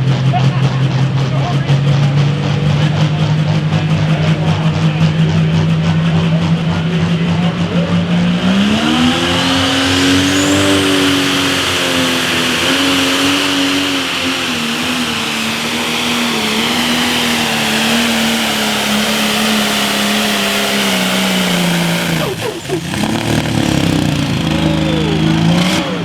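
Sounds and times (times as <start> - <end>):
high turbo whine: 0.0 - 26.0
tractor diesel engine running hard: 0.0 - 26.0.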